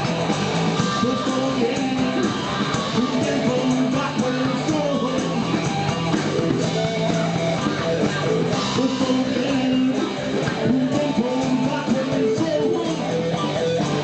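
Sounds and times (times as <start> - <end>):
guitar: 0.0 - 14.0
steady drum beat: 0.0 - 14.0.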